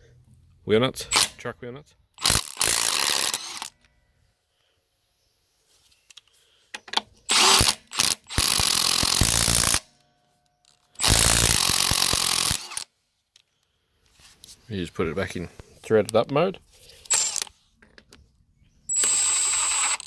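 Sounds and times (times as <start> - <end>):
impact wrench hammering: 7.6 - 9.8.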